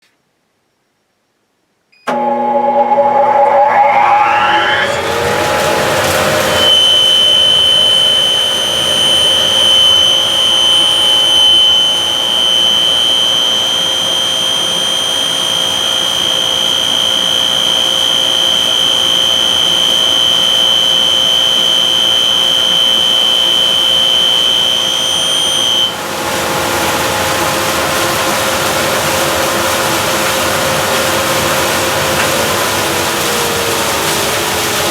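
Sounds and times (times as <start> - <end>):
machine motor running: 2.1 - 34.9
high-pitched machine squeal: 2.7 - 26.0.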